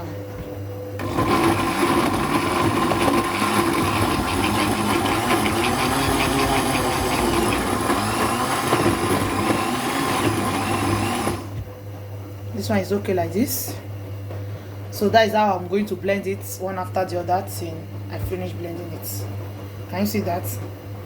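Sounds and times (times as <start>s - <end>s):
blender chopping vegetables: 1.0s - 11.7s.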